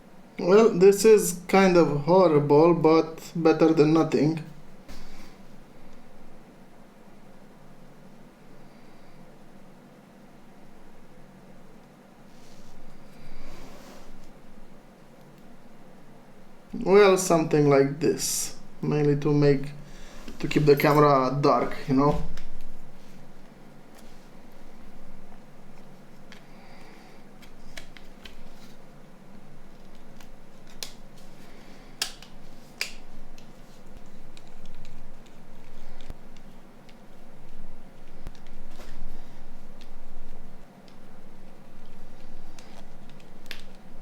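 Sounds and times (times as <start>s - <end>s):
soft rustle: 12.2s - 14.6s, 19.8s - 31.8s, 33.4s - 43.4s
light handling noises: 19.0s - 28.8s.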